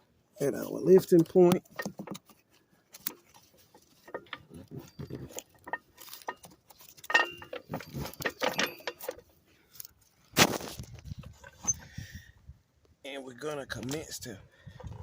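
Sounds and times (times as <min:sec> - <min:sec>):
car jack metallic clicks and clanks: 0:00.9 - 0:02.3, 0:03.0 - 0:09.3.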